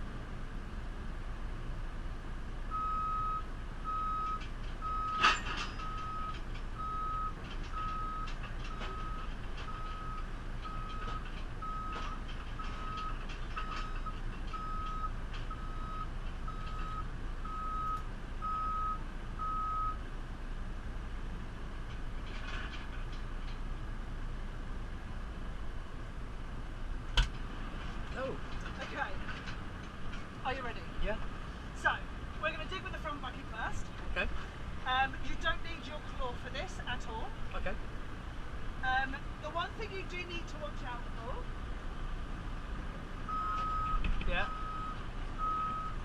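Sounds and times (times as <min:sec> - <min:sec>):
diesel engine running: 0:00.0 - 0:46.0
reversing alarm beeping: 0:02.7 - 0:20.0, 0:43.3 - 0:46.0.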